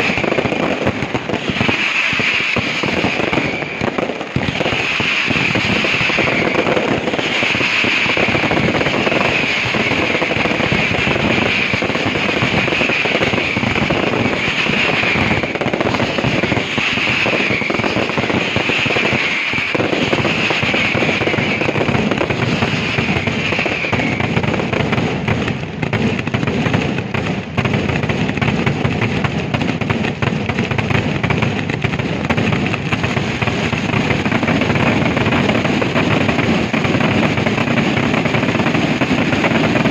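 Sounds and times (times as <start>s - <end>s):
high crackling hiss: 0.0s - 24.8s
fireworks bangs and crackles: 0.0s - 39.9s.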